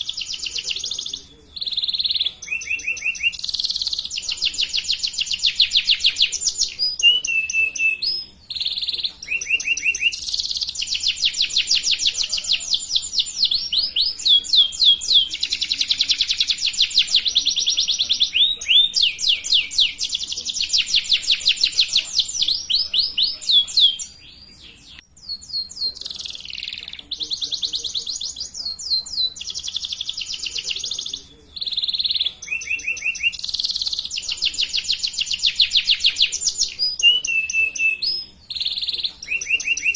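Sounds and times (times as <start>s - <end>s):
canary singing rapid trills: 0.0s - 39.9s.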